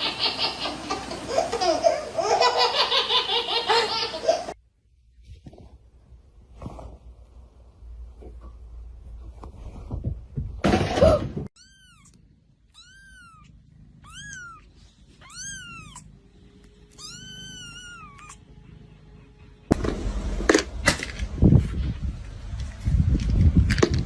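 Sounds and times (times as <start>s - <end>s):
cat meowing: 11.6s - 16.1s, 16.9s - 18.5s.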